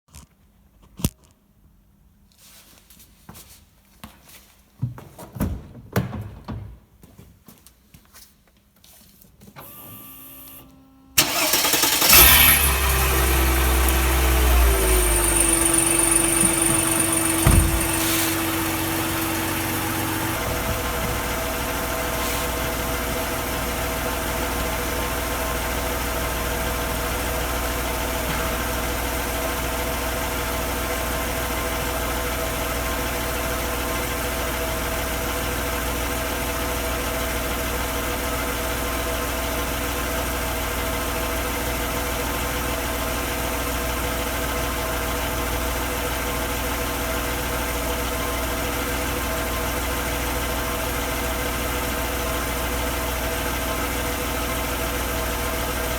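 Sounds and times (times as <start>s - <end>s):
car engine idling: 11.2s - 55.9s.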